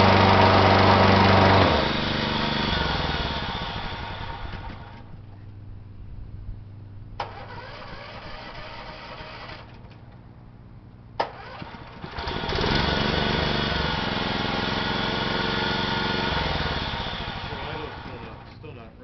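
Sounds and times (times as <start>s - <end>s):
mower engine running and revving: 0.0s - 5.1s, 7.3s - 9.7s, 11.3s - 18.5s.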